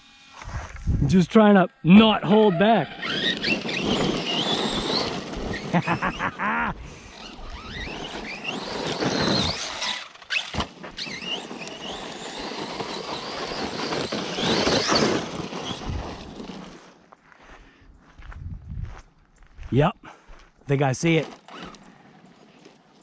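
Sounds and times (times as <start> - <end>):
electric motor whining: 1.8 - 17.0, 21.2 - 21.9
tyres scrabbling on rocky ground: 3.0 - 6.2, 7.1 - 17.3, 20.8 - 23.0.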